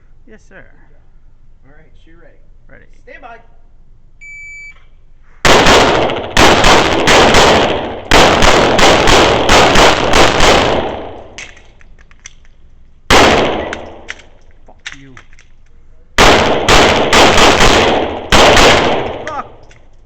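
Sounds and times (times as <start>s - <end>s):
pistol shots echoing: 5.4s - 11.5s, 13.1s - 14.2s, 16.2s - 19.6s.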